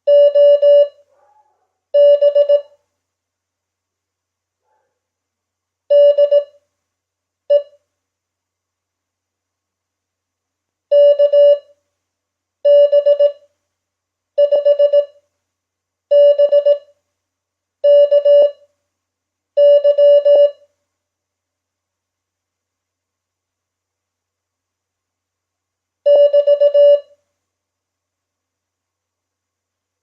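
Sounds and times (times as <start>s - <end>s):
morse code beeps: 0.1s - 1.0s, 2.0s - 2.7s, 5.9s - 6.5s, 10.9s - 11.6s, 12.7s - 13.4s, 14.4s - 15.1s, 16.1s - 16.8s, 17.8s - 18.6s, 19.6s - 20.6s, 26.1s - 27.1s.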